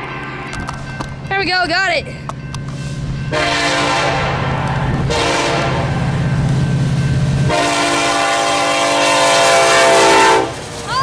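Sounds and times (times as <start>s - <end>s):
locomotive engine drone: 0.0s - 11.0s
locomotive air horn blasts: 3.3s - 6.1s, 7.5s - 10.6s.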